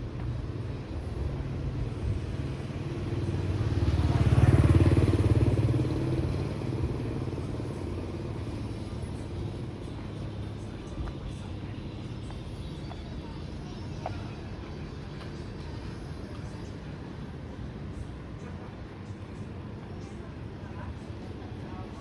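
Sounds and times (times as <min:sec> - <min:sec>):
street traffic: 0:00.0 - 0:22.0
motorbike passing: 0:01.5 - 0:09.8.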